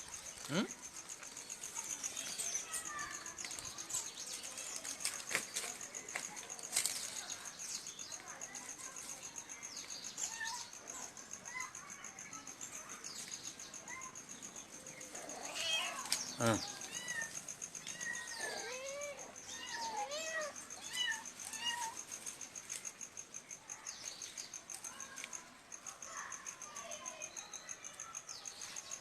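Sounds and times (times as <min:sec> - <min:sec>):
kittens mewing: 0:15.1 - 0:22.0.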